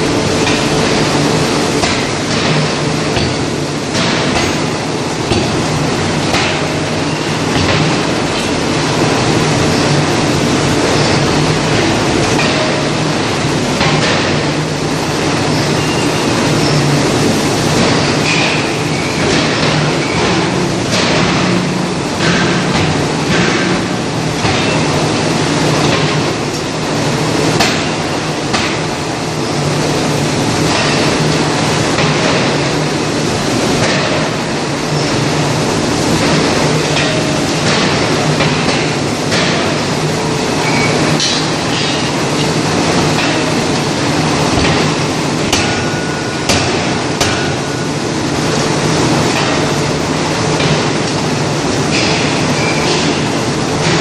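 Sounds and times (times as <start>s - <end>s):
steady machinery noise: 0.0s - 54.0s
forging hammer metallic strikes: 27.6s - 28.9s, 44.6s - 47.8s.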